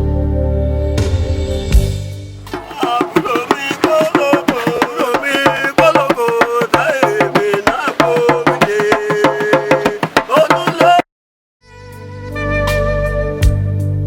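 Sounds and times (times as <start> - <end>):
music with fast drumbeats: 1.7 - 11.0.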